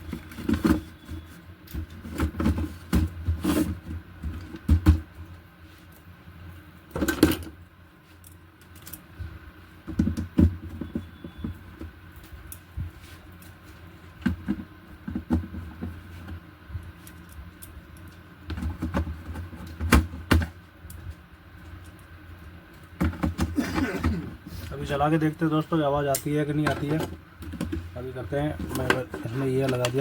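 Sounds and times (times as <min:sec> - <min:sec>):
hands handling tv parts: 0:28.6 - 0:30.0.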